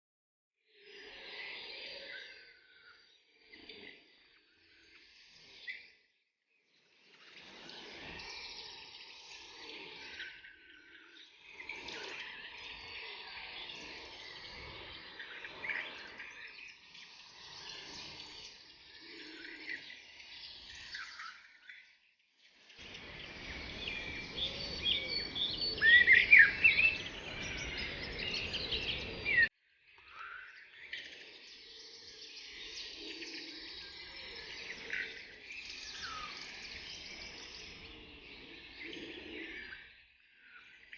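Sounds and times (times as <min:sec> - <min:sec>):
birds chirping and calling: 0:07.1 - 0:22.0, 0:22.6 - 0:40.9.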